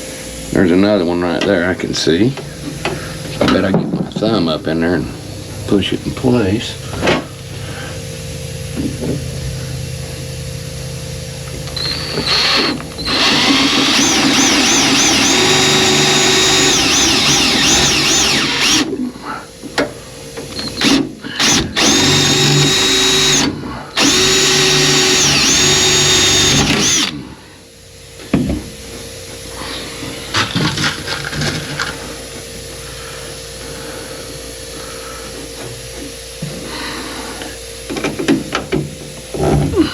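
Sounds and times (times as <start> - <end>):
electric drill whining: 6.9 - 19.0, 20.5 - 27.3.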